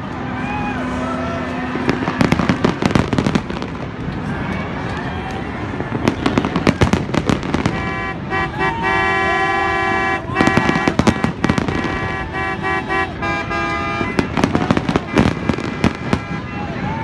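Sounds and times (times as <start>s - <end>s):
fireworks bangs and crackles: 1.4s - 17.0s
horn blaring: 7.3s - 17.0s.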